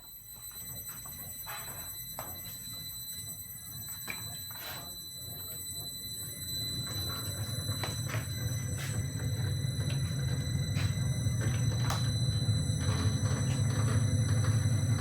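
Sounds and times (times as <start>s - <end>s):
thin high whine: 0.0s - 15.0s
low hum: 6.1s - 15.0s.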